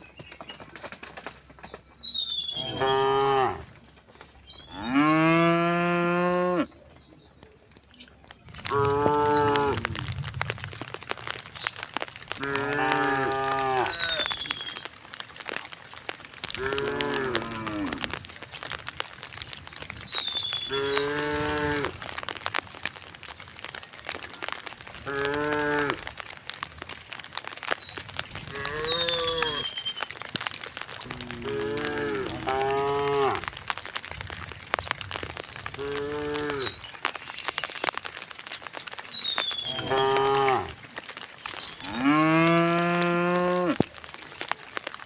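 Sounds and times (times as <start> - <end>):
cows mooing: 2.5 - 3.7, 4.7 - 6.7, 8.6 - 10.0, 12.4 - 14.3, 16.6 - 18.2, 20.7 - 22.0, 28.5 - 29.7, 31.0 - 33.5, 35.8 - 36.8, 39.6 - 40.8, 41.8 - 43.9.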